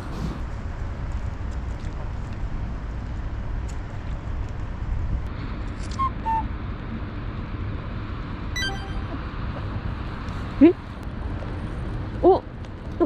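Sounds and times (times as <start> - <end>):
low outdoor background rumble: 0.0 - 13.0
short whistle-like notes: 8.6 - 9.2.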